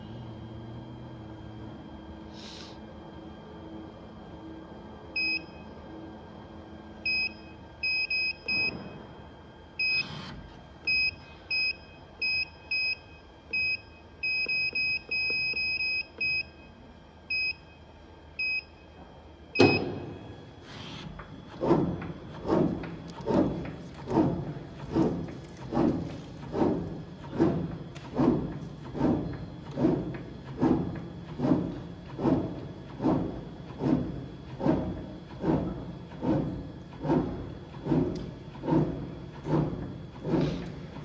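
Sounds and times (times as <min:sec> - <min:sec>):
short electronic beeps: 0:19.6 - 0:20.1
soft regular thumps: 0:19.6 - 0:41.0.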